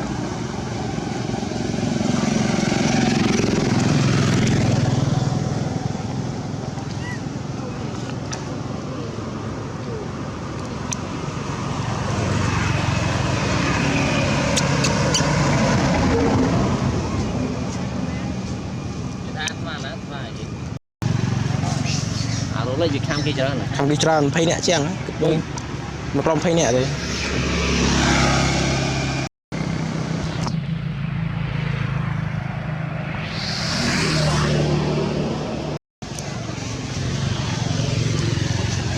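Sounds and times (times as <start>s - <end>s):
vehicle engine humming: 0.0s - 38.9s
rising hiss: 33.1s - 35.0s.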